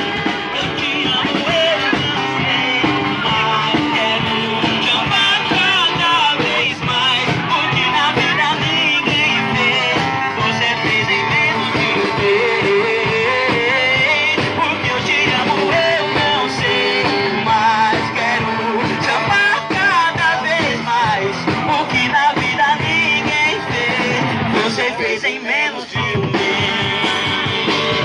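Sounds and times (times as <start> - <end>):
live band playing amplified music: 0.0 - 28.0.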